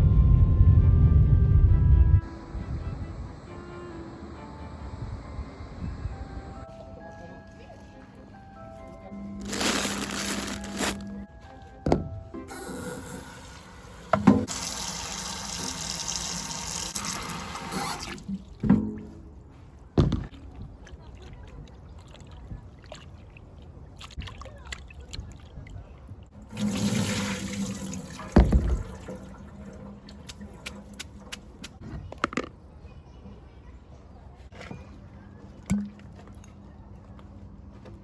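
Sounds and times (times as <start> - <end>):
objects being set down: 9.4 - 12.2
water pouring: 12.7 - 18.6, 26.4 - 31.8.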